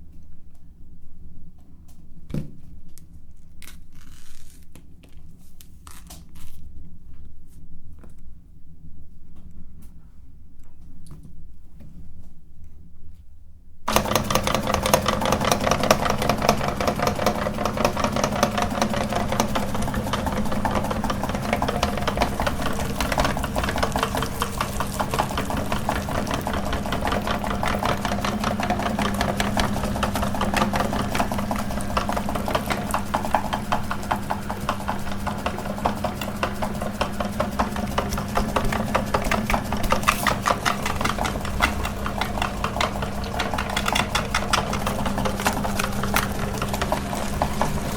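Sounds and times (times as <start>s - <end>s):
gear and auger rattle: 13.9s - 47.9s
meat grinder motor hum: 13.9s - 47.9s.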